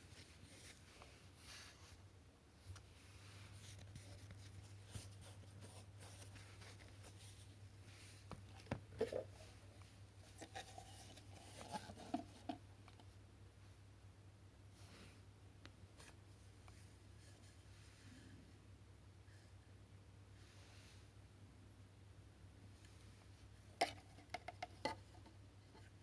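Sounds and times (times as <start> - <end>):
faint low hum: 0.0 - 26.0
plastic vacuum parts handled: 10.3 - 13.0.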